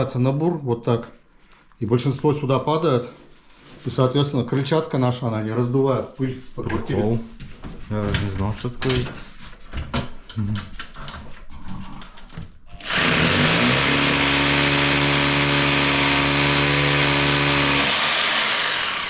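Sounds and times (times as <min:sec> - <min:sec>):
power drill boring into concrete: 0:12.8 - 0:19.0.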